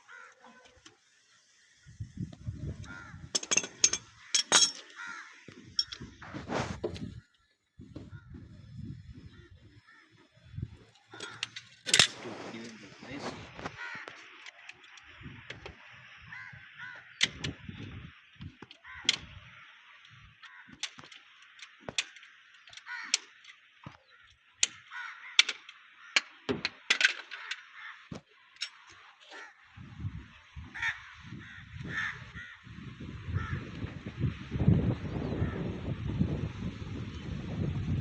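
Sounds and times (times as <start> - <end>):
crows cawing: 0.0 - 0.9, 2.8 - 6.1, 9.4 - 10.3, 10.9 - 12.0, 12.6 - 14.8, 16.2 - 17.4, 18.6 - 28.7, 29.3 - 29.7, 30.7 - 32.7, 33.3 - 33.7
sharp clicks and knocks: 20.7 - 24.0, 24.6 - 29.0.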